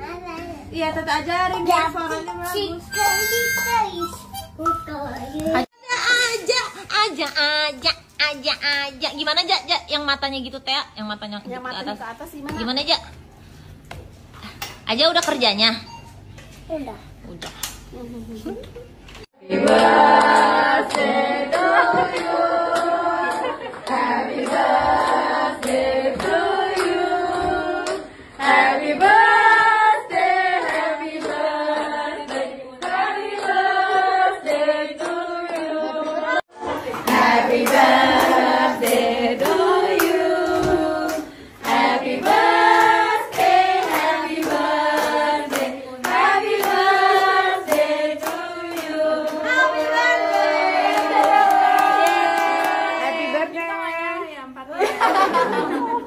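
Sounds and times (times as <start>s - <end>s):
people singing together: 19.4s - 53.6s, 54.8s - 56.0s
hand-clapping on the beat: 19.5s - 28.1s, 30.6s - 35.7s, 36.8s - 53.1s.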